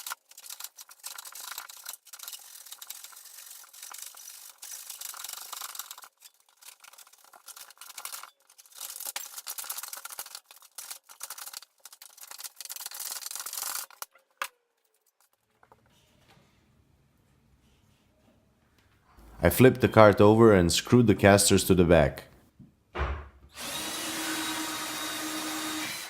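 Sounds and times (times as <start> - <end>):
hand tool rasping wood: 23.6 - 26.0.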